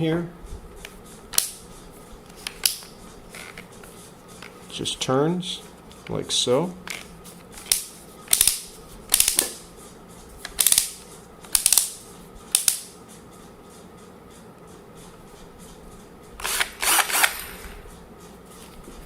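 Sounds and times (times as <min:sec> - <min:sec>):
drill clutch collar clicking: 0:16.4 - 0:17.6.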